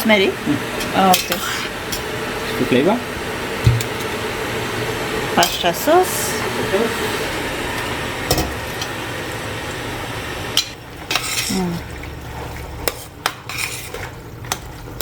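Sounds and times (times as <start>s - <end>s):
metal utensil scraping cooking pot: 10.6s - 11.8s, 12.8s - 14.6s.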